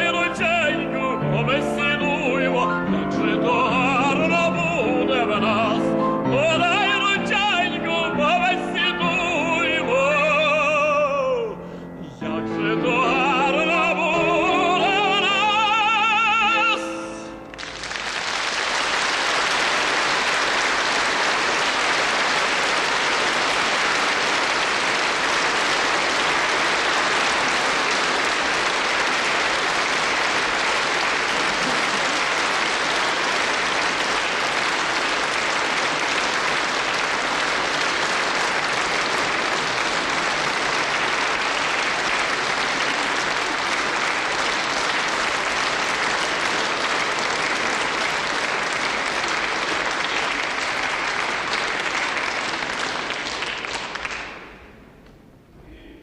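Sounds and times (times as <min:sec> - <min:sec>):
audience applauding: 0:00.0 - 0:11.4, 0:12.6 - 0:54.8
person singing: 0:00.0 - 0:17.5.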